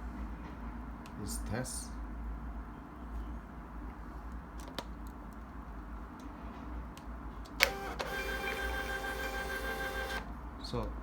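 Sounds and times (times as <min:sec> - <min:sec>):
label printer printing: 0:07.6 - 0:10.3.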